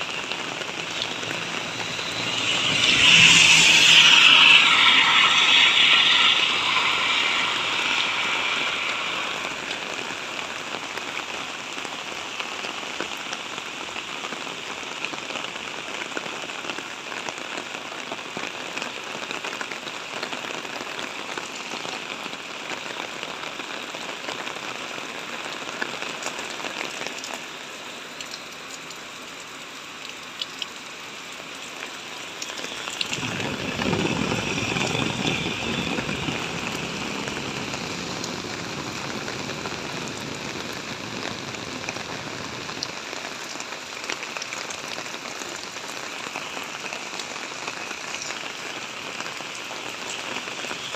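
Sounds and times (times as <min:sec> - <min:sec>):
steady rain hissing: 0:00.0 - 0:50.9
deep rumble: 0:00.1 - 0:04.8, 0:32.9 - 0:42.5
vehicle passing: 0:00.6 - 0:09.8, 0:32.9 - 0:41.2.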